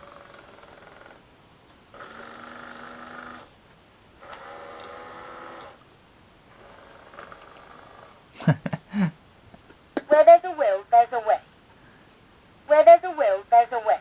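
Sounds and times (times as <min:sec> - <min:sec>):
buzzy electronic snoring: 0:02.0 - 0:03.5.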